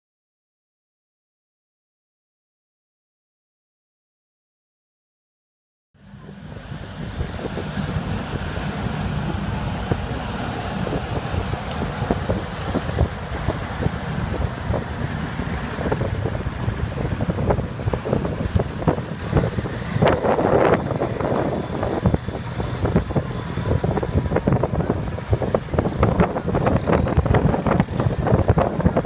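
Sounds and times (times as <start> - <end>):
vehicle engine and road noise: 6.0 - 29.0
wind on microphone: 6.1 - 29.0.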